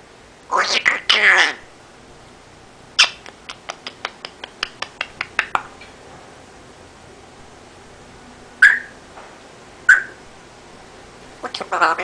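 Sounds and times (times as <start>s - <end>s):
parrot clicking: 3.0s - 5.7s.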